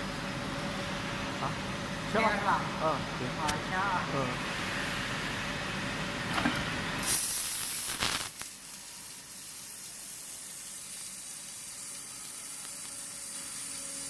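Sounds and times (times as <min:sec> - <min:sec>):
laser cutter sizzling hiss: 0:07.0 - 0:14.0.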